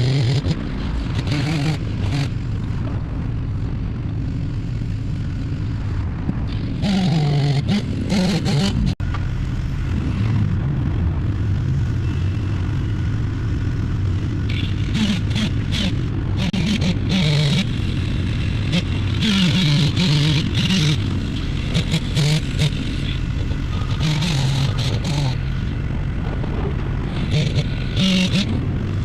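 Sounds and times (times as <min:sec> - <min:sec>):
machinery engine revving: 0:00.0 - 0:29.0.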